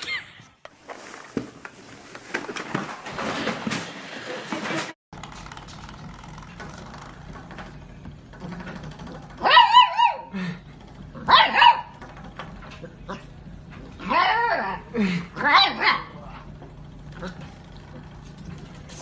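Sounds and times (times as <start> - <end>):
dog barking high-pitched: 9.4 - 10.3, 11.2 - 12.0, 14.0 - 16.2.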